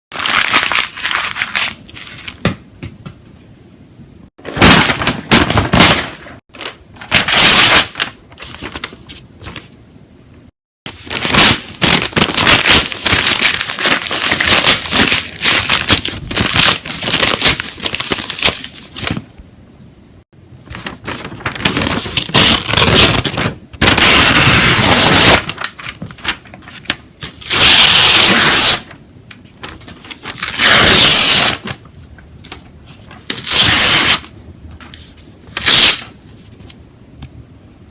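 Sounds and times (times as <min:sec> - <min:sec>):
paper crumpling and tearing: 0:00.2 - 0:02.4, 0:04.5 - 0:09.7, 0:10.9 - 0:19.2, 0:20.7 - 0:29.0, 0:29.6 - 0:31.8, 0:32.9 - 0:36.6.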